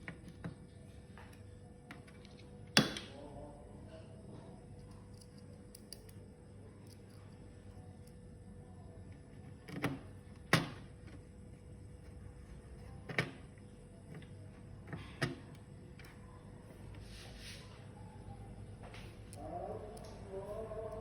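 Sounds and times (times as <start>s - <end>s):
faint steady hum: 0.0s - 21.0s
sharp clicks and knocks of parts: 4.8s - 7.2s.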